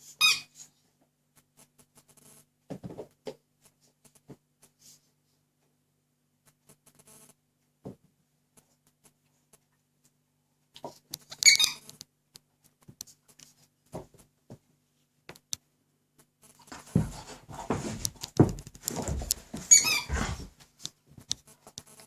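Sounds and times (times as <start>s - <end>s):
squeaky toy squeaking: 0.1s - 0.6s, 11.3s - 12.0s, 19.7s - 20.1s
dull thumps and scuffling: 16.6s - 21.3s.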